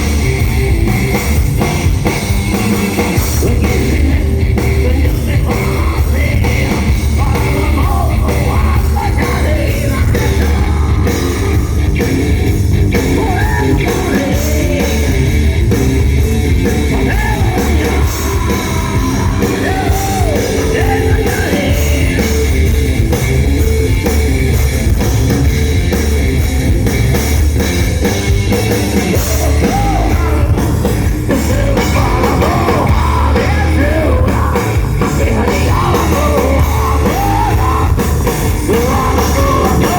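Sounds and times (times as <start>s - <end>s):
distorted guitars: 0.0s - 39.9s
drums: 0.0s - 39.9s
heavy bass: 0.0s - 39.9s
rock band playing live: 0.0s - 39.9s
person singing: 3.2s - 12.4s, 13.0s - 15.6s, 16.6s - 22.6s, 29.1s - 39.9s.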